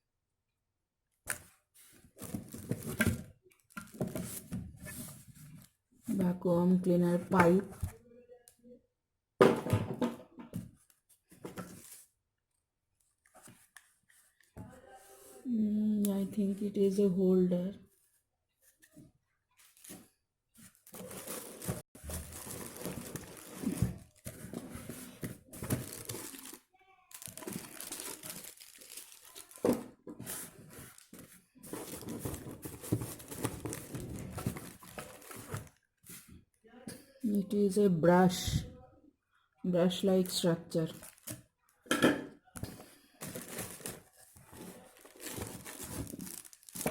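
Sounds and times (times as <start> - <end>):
plastic pipe clattering and rustling: 1.3 - 5.7, 9.4 - 12.0, 20.8 - 26.5, 29.5 - 36.4, 41.0 - 46.9
plastic packaging crinkling: 20.7 - 24.7, 25.5 - 35.8, 40.8 - 41.4, 43.2 - 46.9
sharp plastic crackle: 25.8 - 29.8, 44.8 - 46.9.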